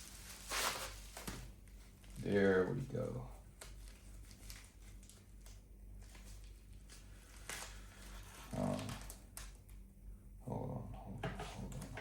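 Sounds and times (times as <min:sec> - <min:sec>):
packaging scrape: 0:00.0 - 0:01.1
packaging rustling: 0:00.0 - 0:02.2, 0:03.6 - 0:09.6.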